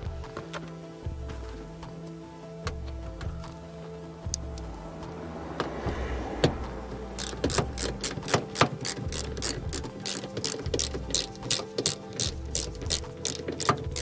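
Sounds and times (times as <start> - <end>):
socket ratchet clicking: 7.2 - 14.0.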